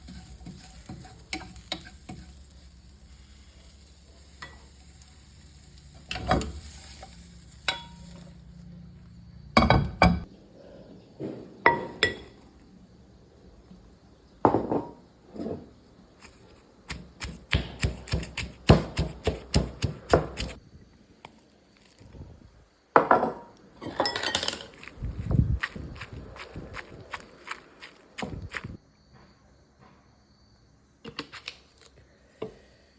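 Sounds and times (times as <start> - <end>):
quick chopping strikes: 16.2 - 20.6.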